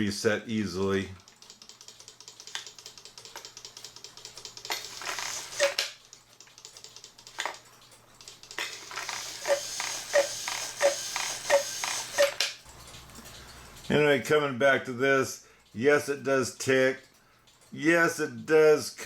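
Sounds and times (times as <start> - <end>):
clock mechanism clicking rapidly: 1.2 - 12.7.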